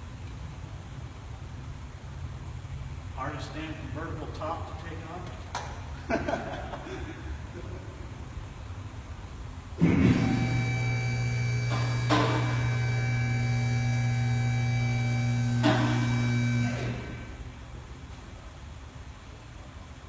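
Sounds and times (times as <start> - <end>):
electric motor humming: 10.1 - 17.4.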